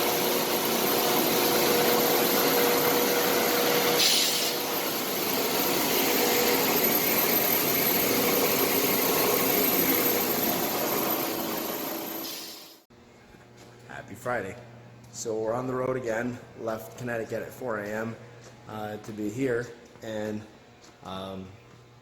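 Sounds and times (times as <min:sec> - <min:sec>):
wire-chopping machinery running: 0:00.0 - 0:12.8
sharp hiss: 0:04.0 - 0:04.6, 0:12.2 - 0:12.8.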